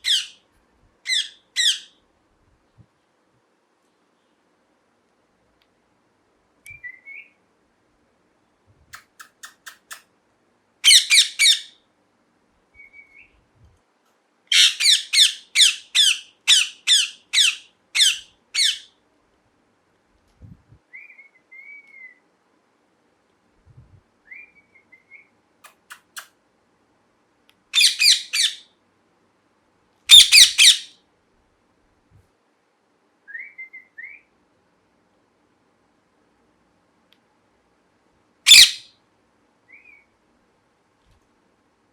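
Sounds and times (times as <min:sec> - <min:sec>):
parrot screeching: 0:00.0 - 0:00.4, 0:01.1 - 0:01.9, 0:10.8 - 0:11.7, 0:14.5 - 0:18.9, 0:27.8 - 0:28.6, 0:30.1 - 0:30.9, 0:38.5 - 0:38.9.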